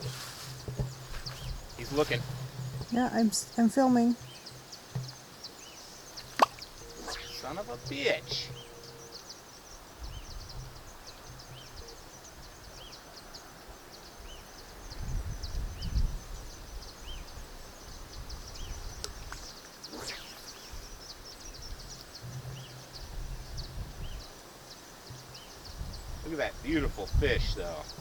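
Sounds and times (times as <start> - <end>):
wind gust on microphone: 0.0 - 4.3, 6.0 - 9.0, 9.7 - 12.9, 14.2 - 24.4, 25.4 - 28.0
bird calling: 0.0 - 9.8, 18.2 - 23.0
high insect ticking: 0.6 - 9.9
short swish: 6.4 - 7.6, 19.9 - 20.9.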